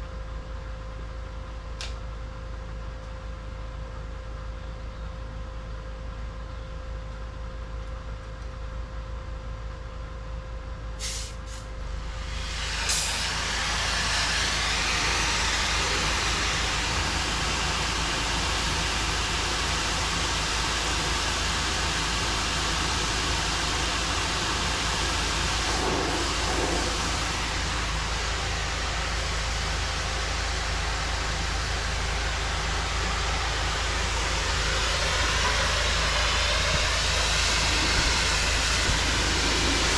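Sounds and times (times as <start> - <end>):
high-pressure water spray hiss: 11.0 - 39.9
pressure washer engine running: 12.0 - 39.9.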